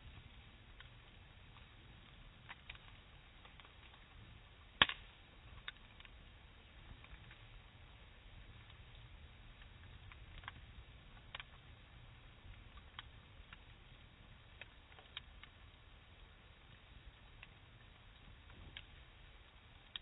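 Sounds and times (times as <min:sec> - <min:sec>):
faint campfire crackling: 0:00.0 - 0:20.0.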